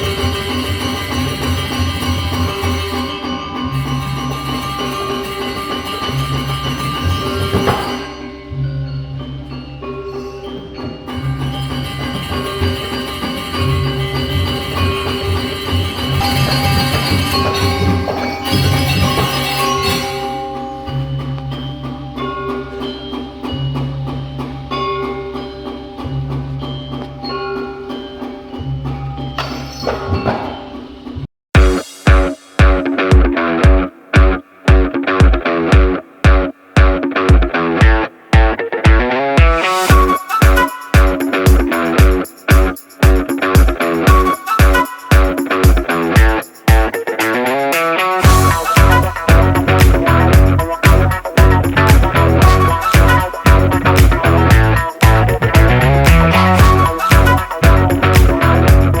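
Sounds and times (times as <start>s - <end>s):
bell-like plucked melody: 0.0s - 31.0s, 37.2s - 59.0s
guitar music: 31.6s - 59.0s
rhythmic bass line: 31.6s - 59.0s.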